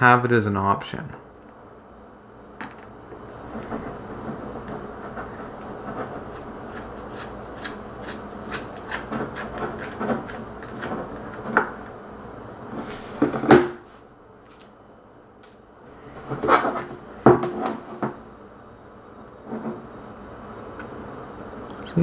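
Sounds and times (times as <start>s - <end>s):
small tools scraping phone casing: 5.9s - 11.8s.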